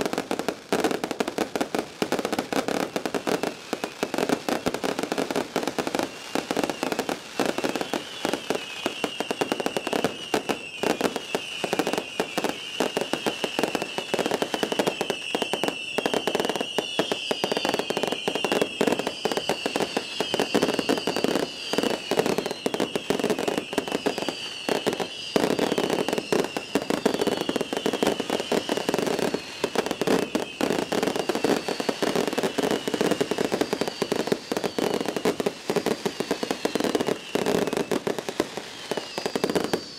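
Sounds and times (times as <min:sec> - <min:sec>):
fireworks bangs and crackling: 0:00.0 - 0:39.9
falling whistles: 0:06.0 - 0:39.9.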